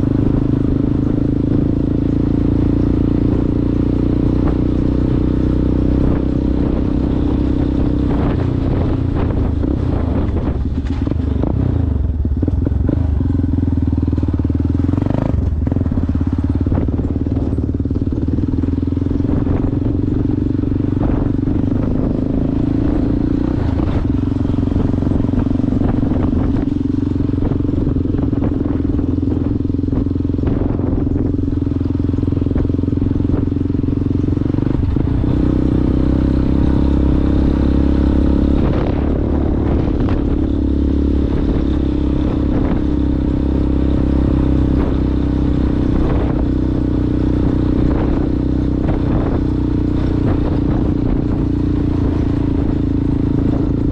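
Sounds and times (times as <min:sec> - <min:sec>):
motorcycle engine off road: 0:00.0 - 0:53.9
knocks and clatter from rough track: 0:08.1 - 0:13.4.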